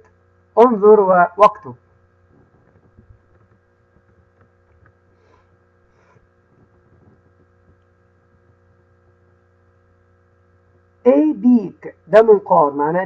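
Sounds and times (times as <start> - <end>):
faint electrical hum: 0.0 - 13.0
soft rustles: 2.2 - 8.8.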